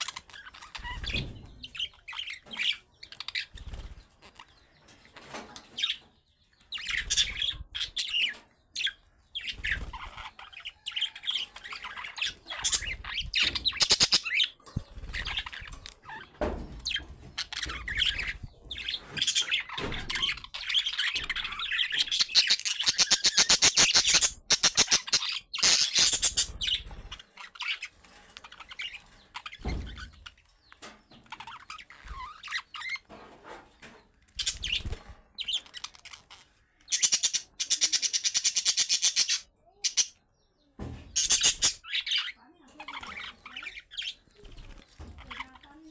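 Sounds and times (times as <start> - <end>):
budgerigars chattering: 6.7 - 16.2, 16.9 - 27.9, 34.4 - 40.2, 41.2 - 44.4.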